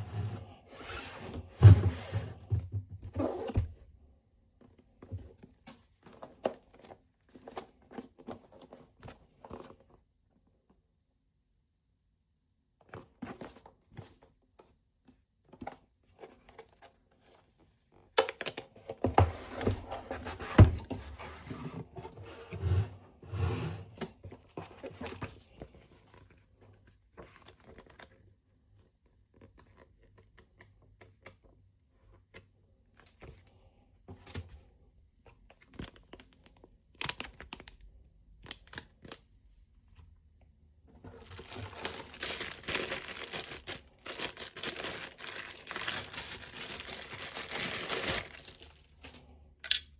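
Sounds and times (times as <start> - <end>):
packaging crinkling and tearing: 36.9 - 37.8, 41.1 - 49.8.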